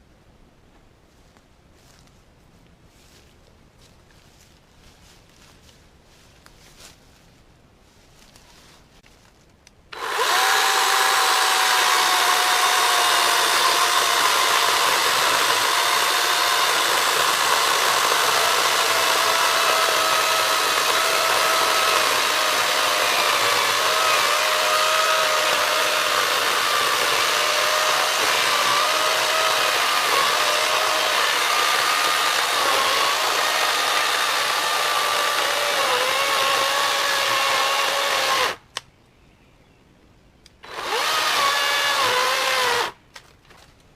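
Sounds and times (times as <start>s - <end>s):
electric chainsaw whining: 9.9s - 38.6s, 40.6s - 43.0s.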